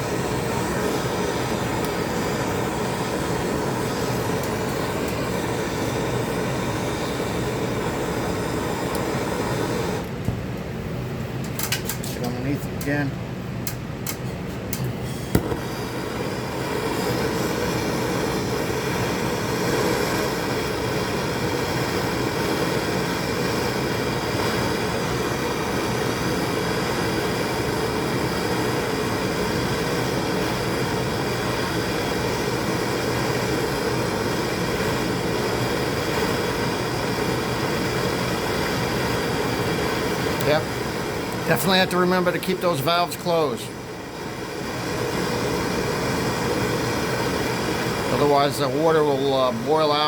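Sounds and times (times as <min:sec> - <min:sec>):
torch click: 0:00.0 - 0:10.7, 0:13.6 - 0:43.5
gas torch flame rushing: 0:00.0 - 0:50.0.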